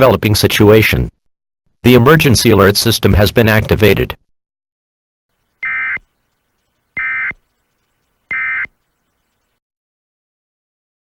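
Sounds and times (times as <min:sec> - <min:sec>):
two-tone digital data bursts: 0:05.6 - 0:09.4.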